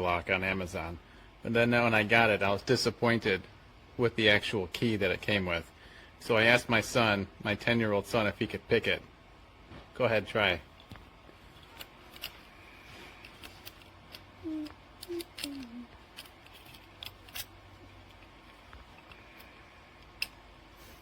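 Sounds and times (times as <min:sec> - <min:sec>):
metallic clicks of lock picking: 0:11.6 - 0:12.4, 0:13.2 - 0:18.3.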